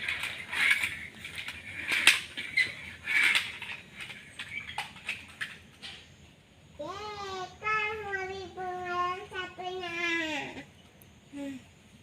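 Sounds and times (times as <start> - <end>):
plastic toy cars clicking: 0.0 - 6.0
scraping rustles: 0.0 - 6.1.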